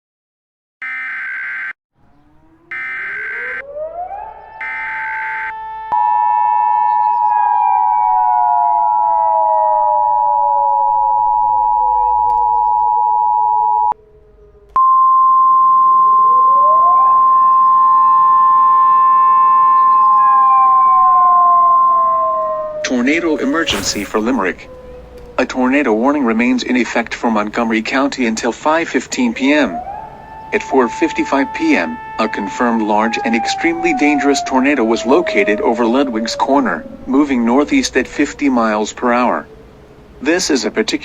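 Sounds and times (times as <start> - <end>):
civil defense siren winding: 0.8 - 40.9
steady high tone: 22.9 - 24.8.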